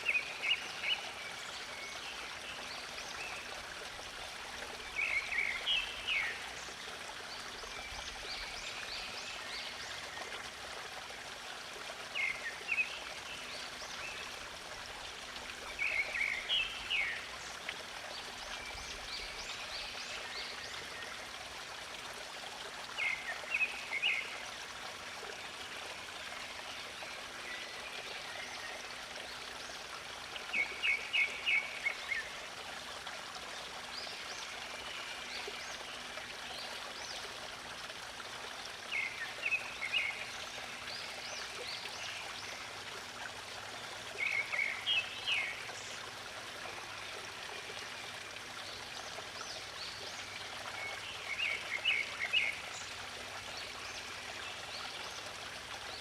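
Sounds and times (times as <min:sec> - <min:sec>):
stream of running water: 0:00.0 - 0:56.0
songbird singing: 0:44.2 - 0:46.0.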